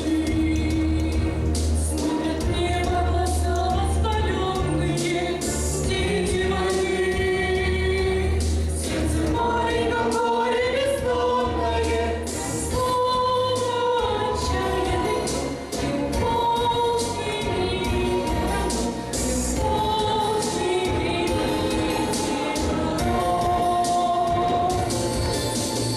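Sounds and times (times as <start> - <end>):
instrumental backing track: 0.0 - 25.9
choir singing held notes: 8.8 - 25.9.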